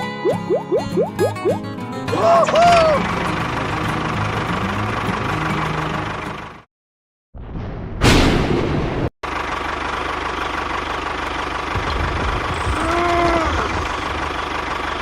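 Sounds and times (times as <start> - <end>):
engine running with low chug: 2.1 - 6.7, 9.2 - 15.0.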